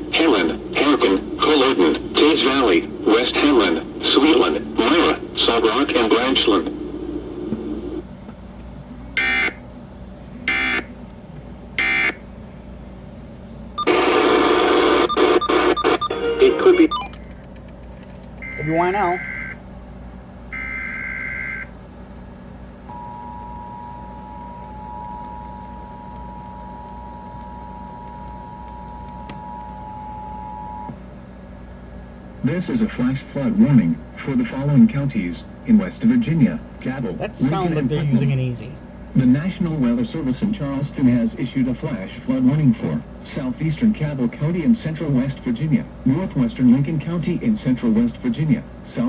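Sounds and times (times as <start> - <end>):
radio hum and hiss: 0.0 - 8.0.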